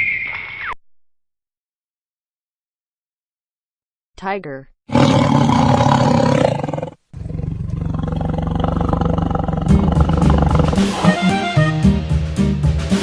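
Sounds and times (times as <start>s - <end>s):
tiger roaring: 4.9s - 11.2s
upbeat background music: 9.6s - 13.0s.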